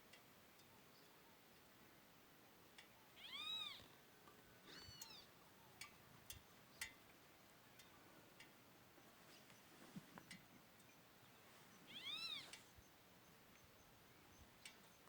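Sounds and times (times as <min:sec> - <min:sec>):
cat meowing faintly: 0:11.9 - 0:12.6.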